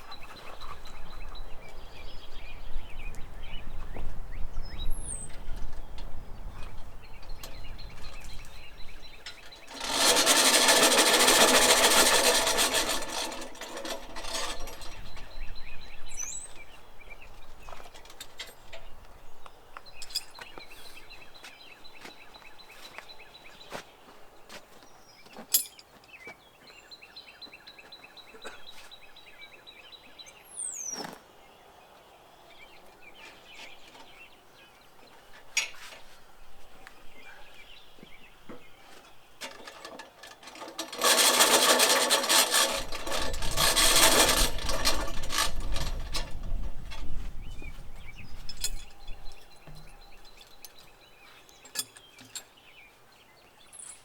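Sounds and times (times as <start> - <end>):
birds chirping: 0.0 - 54.0
loud mechanical noise: 9.6 - 15.1, 39.6 - 46.4.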